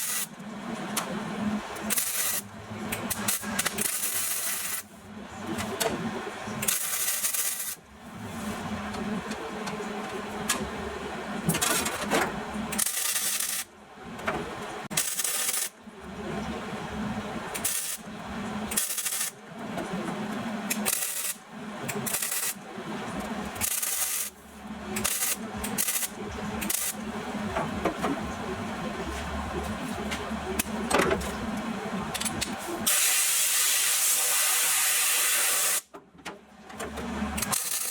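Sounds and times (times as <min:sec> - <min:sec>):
steady low hum: 0:00.0 - 0:12.8, 0:15.6 - 0:32.9.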